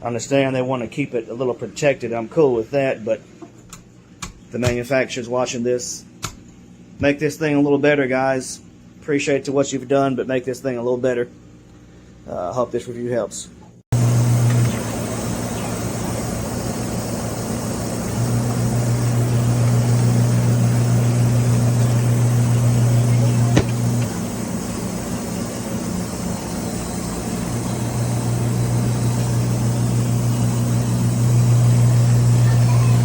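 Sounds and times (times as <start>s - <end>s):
washing machine motor hum: 13.9s - 33.0s
washing machine churning: 14.0s - 33.0s.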